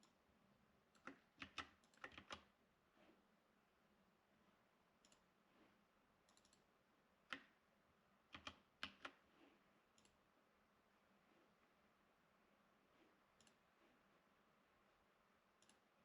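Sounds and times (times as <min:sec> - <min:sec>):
keyboard keystrokes: 0:01.0 - 0:02.5, 0:08.3 - 0:09.2
mouse clicks: 0:06.3 - 0:06.7, 0:09.9 - 0:10.2, 0:13.4 - 0:13.6, 0:15.6 - 0:15.9.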